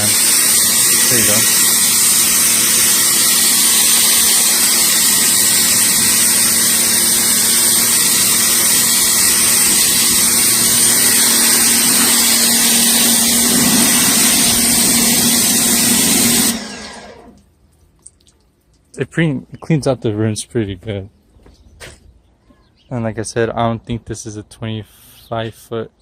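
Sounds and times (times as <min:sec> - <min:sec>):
high-pressure water jet hissing: 0:00.0 - 0:17.3
pressure washer motor humming: 0:00.0 - 0:17.5.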